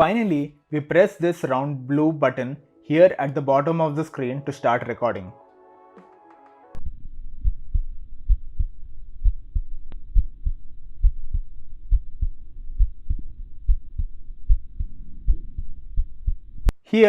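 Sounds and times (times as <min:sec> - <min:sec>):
heartbeat lub-dub beats: 0:07.4 - 0:16.7.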